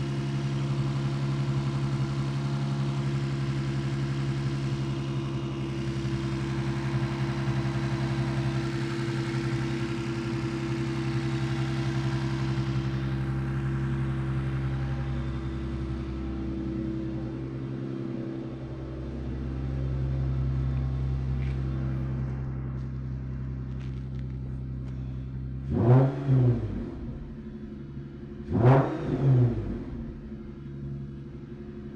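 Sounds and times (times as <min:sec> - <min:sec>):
car engine idling: 0:00.0 - 0:31.9
engine revving: 0:23.8 - 0:31.6.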